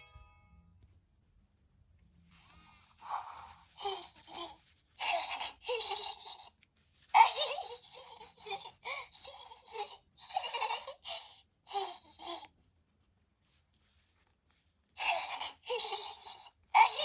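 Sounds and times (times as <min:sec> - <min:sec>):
toy baby bear giggles and coos: 0:02.4 - 0:12.5, 0:15.0 - 0:17.0.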